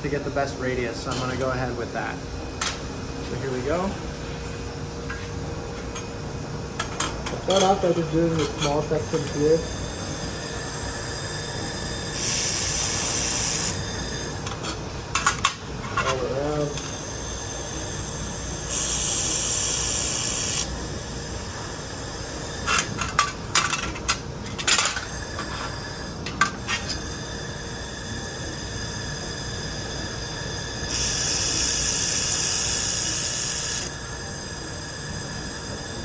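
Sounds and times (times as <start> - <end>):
laser welder hissing: 7.4 - 23.9, 24.7 - 36.0.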